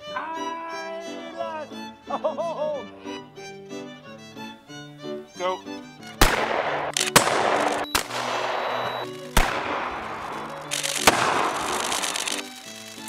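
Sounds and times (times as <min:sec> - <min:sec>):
violin music: 0:00.0 - 0:13.0
sharp bangs with hissing rush: 0:06.2 - 0:13.0.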